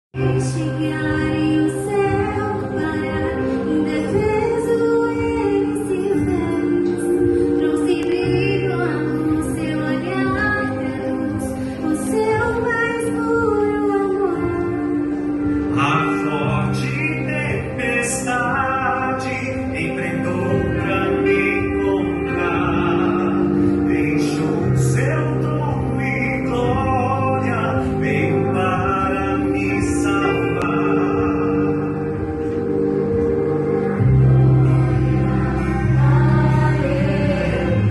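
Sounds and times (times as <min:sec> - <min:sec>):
sustained low accompanying notes: 0:14.6 - 0:37.9
vocal group singing gospel: 0:15.4 - 0:37.9.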